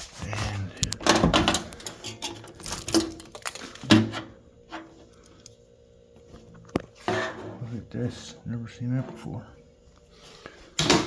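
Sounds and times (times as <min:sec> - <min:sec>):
packaging rustling: 0:00.0 - 0:04.0.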